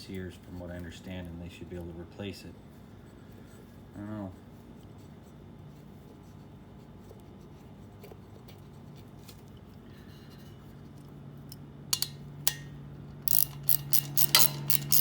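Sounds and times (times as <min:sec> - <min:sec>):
ratchet wrench clicks: 0:11.9 - 0:15.0.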